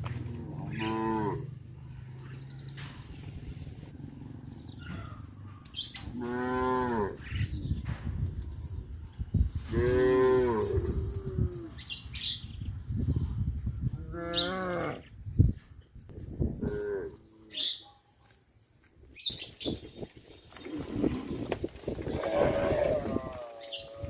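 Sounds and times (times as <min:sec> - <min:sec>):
cattle mooing: 0:00.2 - 0:01.5, 0:22.1 - 0:24.0.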